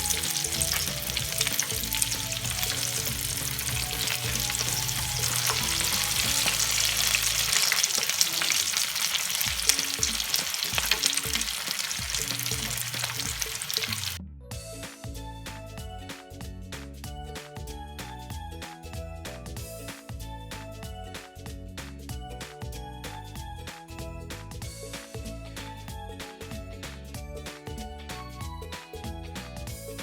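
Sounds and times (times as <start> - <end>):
deep-frying sizzling in oil: 0.0 - 14.2
background music: 0.0 - 30.0.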